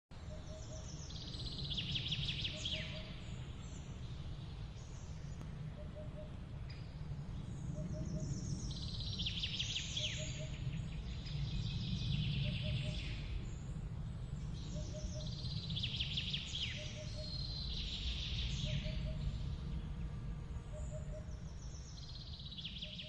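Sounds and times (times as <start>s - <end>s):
low background rumble: 0.1s - 23.0s
songbird trilling: 0.3s - 3.3s, 7.8s - 13.2s, 14.6s - 19.4s, 20.7s - 23.0s.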